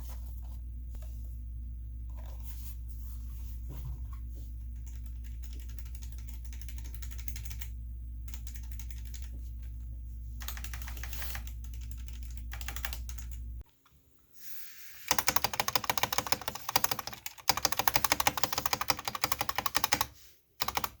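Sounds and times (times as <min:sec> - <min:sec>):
low hum: 0:00.0 - 0:13.6.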